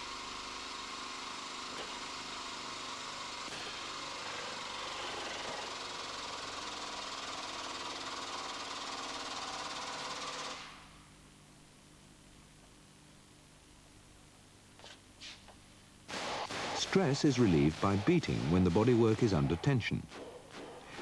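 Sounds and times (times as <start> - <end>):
air-driven pump running: 0.0 - 11.0.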